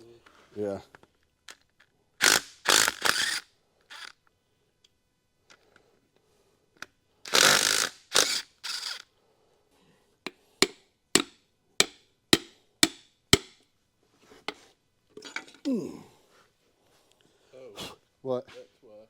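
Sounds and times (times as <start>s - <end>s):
power tool bursts: 2.2s - 4.1s, 7.3s - 9.0s
hammer striking metal: 10.6s - 13.6s.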